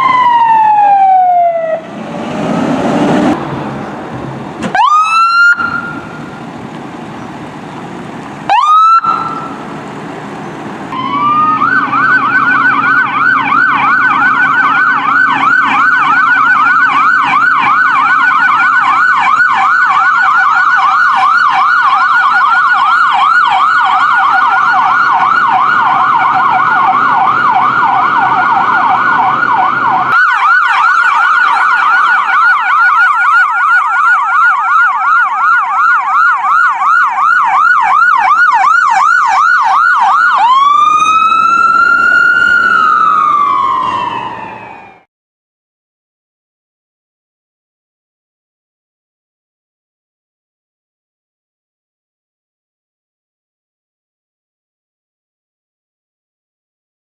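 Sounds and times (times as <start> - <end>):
siren fast yelp warbling: 0.0 - 1.9, 4.7 - 6.2, 8.5 - 9.6, 11.0 - 45.0
siren rising whoops: 0.0 - 2.1, 4.7 - 6.4, 8.5 - 9.6, 10.9 - 45.1
low vehicle rumble: 0.0 - 45.1.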